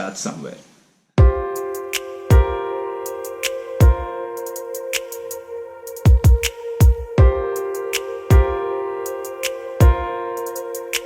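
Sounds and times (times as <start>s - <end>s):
kick drum beats: 1.2s - 1.6s, 2.3s - 2.6s, 3.8s - 4.1s, 6.1s - 7.5s, 8.3s - 8.6s, 9.8s - 10.1s
held synth chords: 1.2s - 11.0s.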